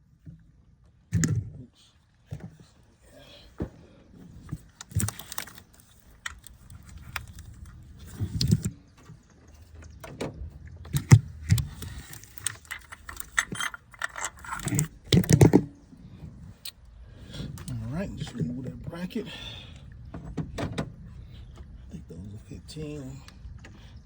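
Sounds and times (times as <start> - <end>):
metal tools clinking: 10.9 - 15.6.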